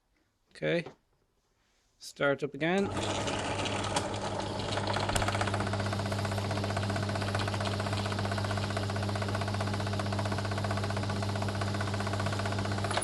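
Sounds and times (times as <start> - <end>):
drill motor humming: 2.8 - 13.0.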